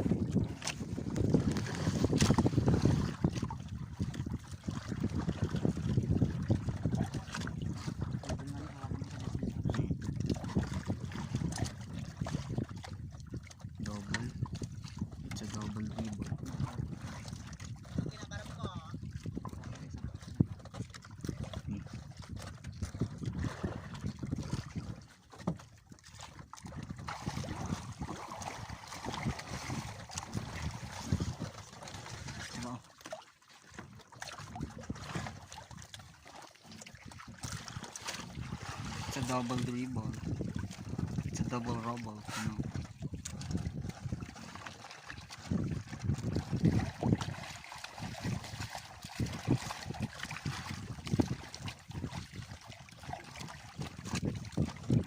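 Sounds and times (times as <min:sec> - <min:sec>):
wind on microphone: 0:00.0 - 0:32.8, 0:33.7 - 0:55.0
water sloshing and splashing: 0:00.0 - 0:55.0.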